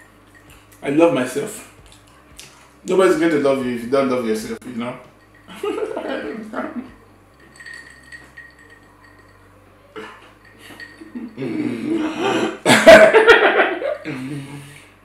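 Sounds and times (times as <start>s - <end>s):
dishes clinking: 0.0s - 0.9s, 5.0s - 11.7s.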